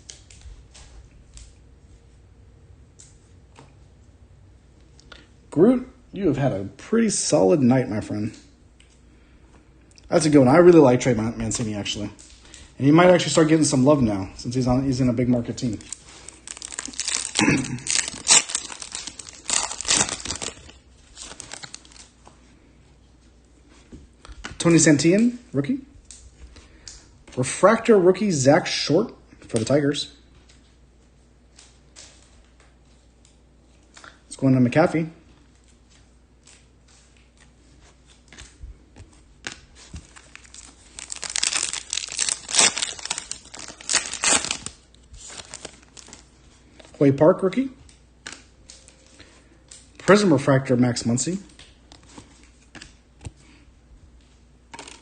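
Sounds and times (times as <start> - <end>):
foil wrapper crinkling and tearing: 11.5 - 22.2, 39.4 - 47.0.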